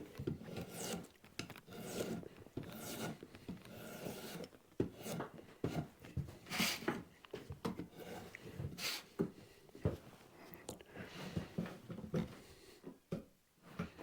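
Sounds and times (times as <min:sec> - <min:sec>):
draw knife shaving bark: 0:00.2 - 0:05.9, 0:07.9 - 0:08.4.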